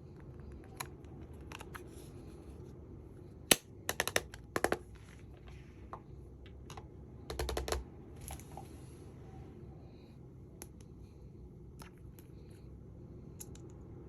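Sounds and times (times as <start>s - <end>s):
plastic parts clicking: 3.5s - 4.8s.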